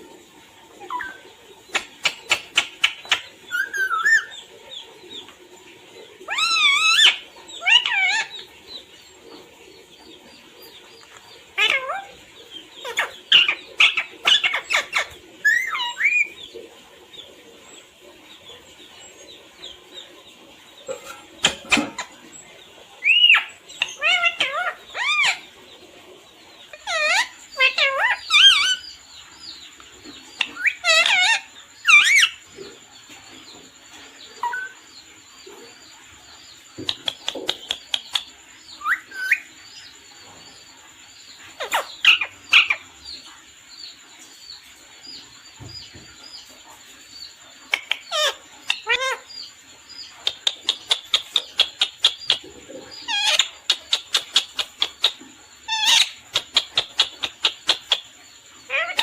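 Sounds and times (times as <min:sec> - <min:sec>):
parrot chirps: 0:00.8 - 0:04.4, 0:06.3 - 0:08.4, 0:11.6 - 0:12.2, 0:12.8 - 0:16.4, 0:23.0 - 0:25.4, 0:26.7 - 0:29.0, 0:30.4 - 0:32.4, 0:34.4 - 0:34.8, 0:36.9 - 0:39.5, 0:41.6 - 0:42.8, 0:47.7 - 0:49.5, 0:50.2 - 0:58.1, 0:58.7 - 0:59.0
parrot screeching and whistling: 0:12.8 - 0:16.3, 0:26.8 - 0:28.8, 0:53.1 - 0:53.5, 0:55.7 - 0:56.2.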